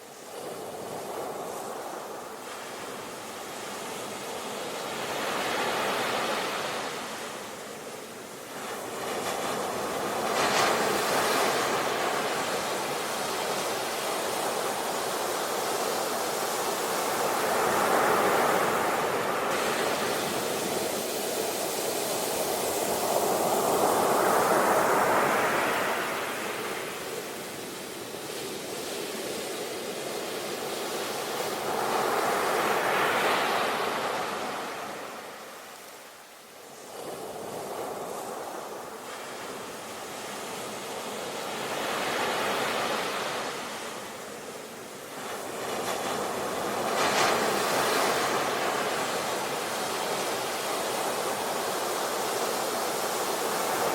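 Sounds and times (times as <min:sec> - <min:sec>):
waves breaking on shore: 0:00.0 - 0:53.9.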